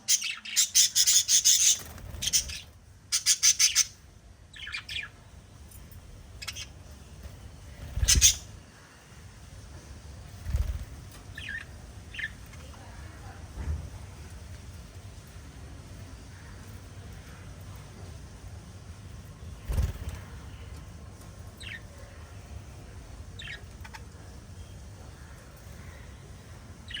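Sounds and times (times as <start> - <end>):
small parrots chirping: 0.0 - 5.2, 6.4 - 6.9, 7.9 - 8.6, 11.3 - 12.8, 23.3 - 24.4.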